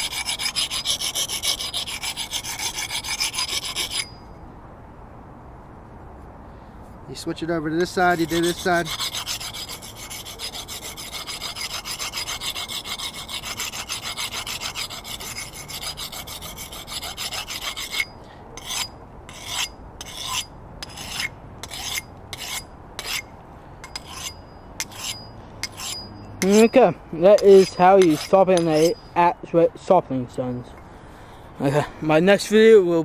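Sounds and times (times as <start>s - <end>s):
blade scraping on sharpening stone: 0.0s - 4.3s, 7.8s - 29.3s.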